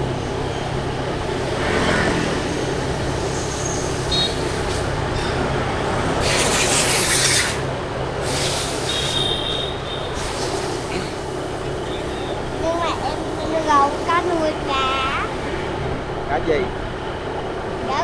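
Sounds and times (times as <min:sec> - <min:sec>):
road vehicle humming: 0:00.0 - 0:18.0
loud bursts of hiss: 0:06.2 - 0:07.6, 0:08.2 - 0:09.2.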